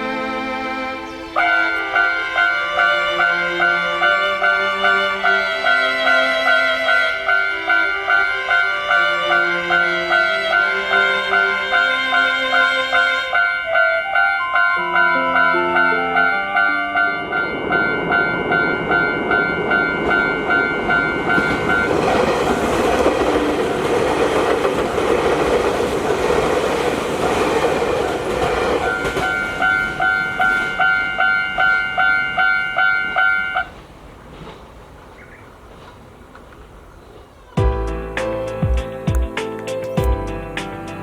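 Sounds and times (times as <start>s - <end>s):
electric train passing: 0.0s - 41.0s
level crossing bell ringing: 1.4s - 22.0s, 28.9s - 33.7s.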